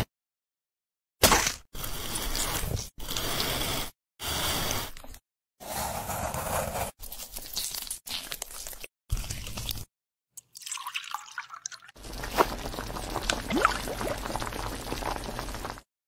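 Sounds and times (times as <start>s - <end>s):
food tearing and crunching: 7.0s - 9.9s.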